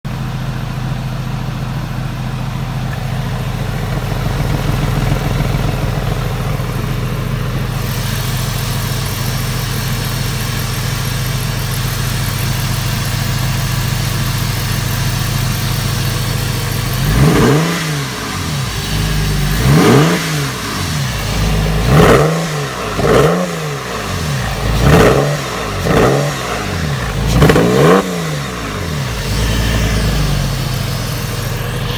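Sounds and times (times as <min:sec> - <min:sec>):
car engine misfiring at idle: 0:00.1 - 0:31.9
engine revving in blips: 0:17.0 - 0:31.9.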